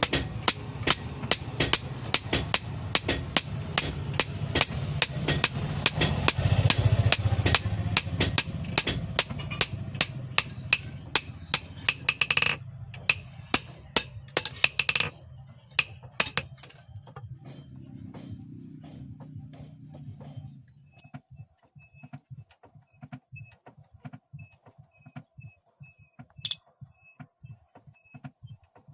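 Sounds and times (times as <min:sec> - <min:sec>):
hammer striking steel on anvil: 0:00.0 - 0:16.8.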